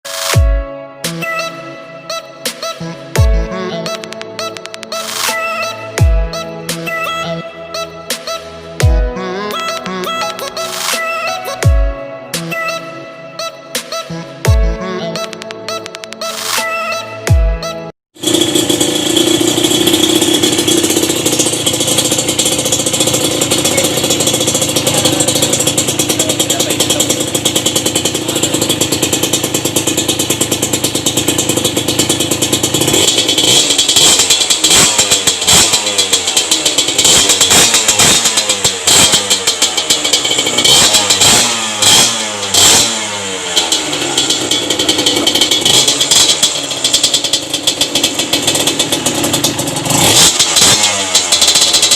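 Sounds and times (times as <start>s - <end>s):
two-stroke engine revving: 18.1s - 51.9s.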